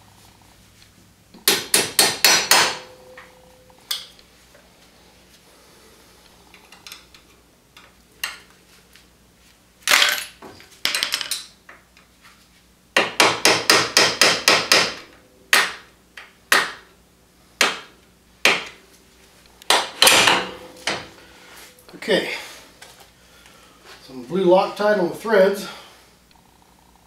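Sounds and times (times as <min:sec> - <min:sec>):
hammer striking bolt: 0:01.4 - 0:03.3, 0:19.7 - 0:21.1.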